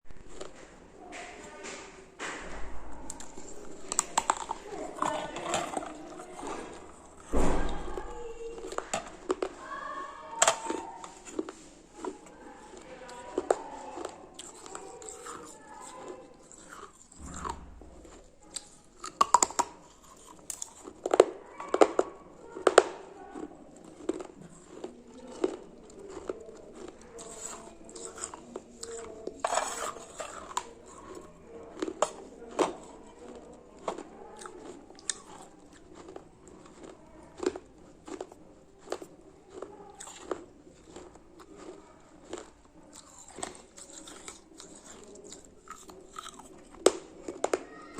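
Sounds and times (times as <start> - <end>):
person chewing crunchy food: 0.1 - 1.8, 2.5 - 47.9.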